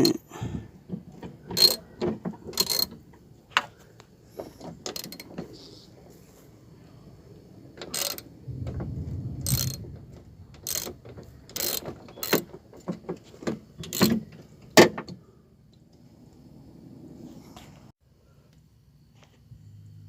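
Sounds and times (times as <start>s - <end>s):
metal clicks of hand tools: 1.5s - 3.0s, 10.6s - 13.0s
low rumble: 7.2s - 11.6s.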